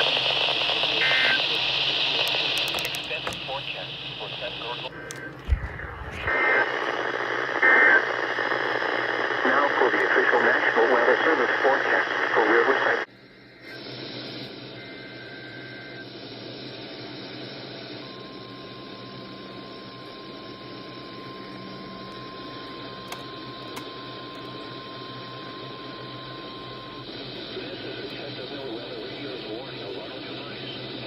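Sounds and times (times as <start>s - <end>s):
radio hiss: 0.0s - 31.0s
steady warning alarm tone: 0.9s - 6.3s, 13.3s - 31.0s
two-tone data warble: 13.4s - 31.0s.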